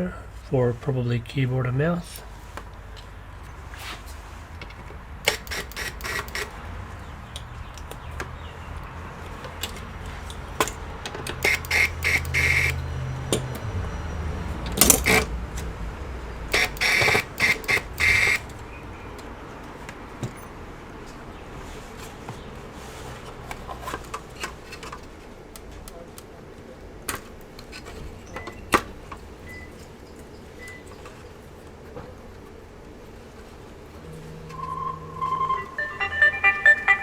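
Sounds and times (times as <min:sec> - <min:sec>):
computer parts clicking and knocking: 0:04.6 - 0:06.6, 0:09.3 - 0:13.7, 0:14.6 - 0:15.7, 0:16.5 - 0:18.4.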